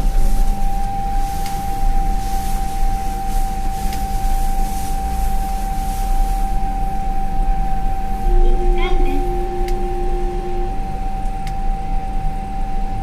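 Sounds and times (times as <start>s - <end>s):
elevator speaker high tone: 0.0s - 13.0s
low rumble: 6.8s - 13.0s.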